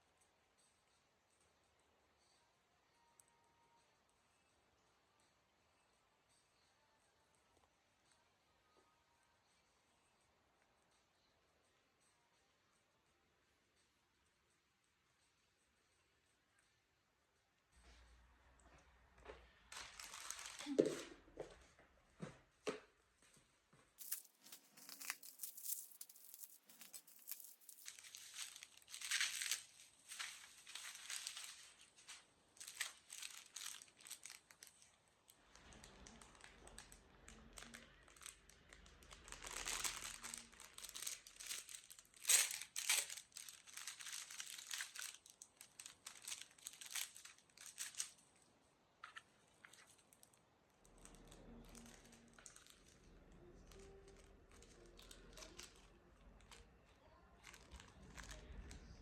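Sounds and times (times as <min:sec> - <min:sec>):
packaging crinkling and tearing: 0:19.7 - 0:21.1, 0:24.0 - 0:48.2, 0:49.0 - 0:56.7, 0:57.4 - 0:59.0.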